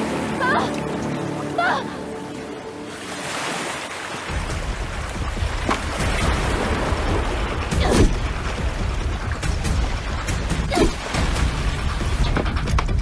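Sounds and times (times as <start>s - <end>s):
deep rumble: 4.3s - 13.0s.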